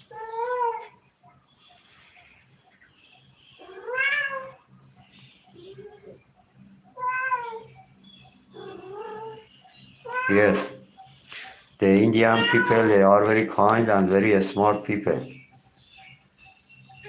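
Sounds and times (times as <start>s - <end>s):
cat meowing: 0.1s - 0.9s, 3.6s - 4.6s, 7.0s - 7.7s, 8.6s - 9.4s, 10.0s - 10.8s, 11.8s - 13.5s.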